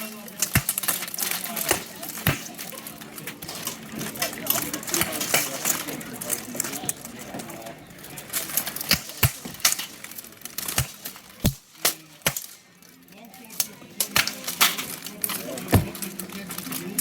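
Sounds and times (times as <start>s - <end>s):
background voices: 0.0s - 10.4s.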